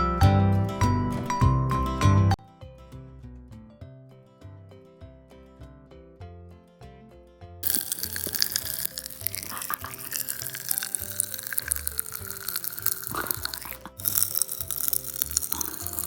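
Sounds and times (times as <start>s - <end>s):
background music: 0.0s - 16.0s
popping candy crackling: 7.6s - 16.0s.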